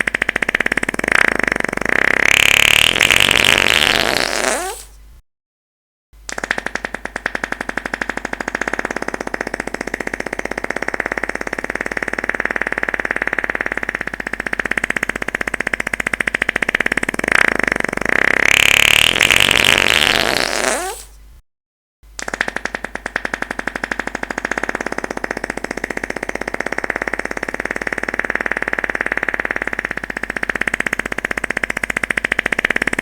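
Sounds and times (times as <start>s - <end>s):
long fluttering fart: 0.0s - 4.9s, 10.4s - 21.1s.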